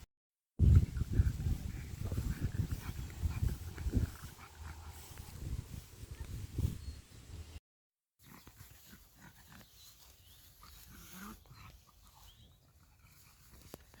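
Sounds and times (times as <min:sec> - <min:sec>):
faint pug dog sounds: 0:08.2 - 0:14.0.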